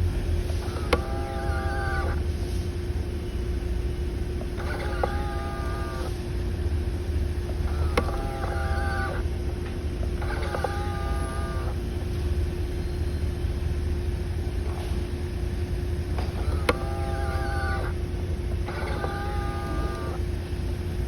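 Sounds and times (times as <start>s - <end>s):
mirror motor whirring: 0.4s - 2.4s, 3.6s - 6.4s, 7.0s - 12.6s, 16.1s - 21.0s
mirror motor click: 0.5s - 2.2s, 4.4s - 6.2s, 7.4s - 11.8s, 16.2s - 20.8s.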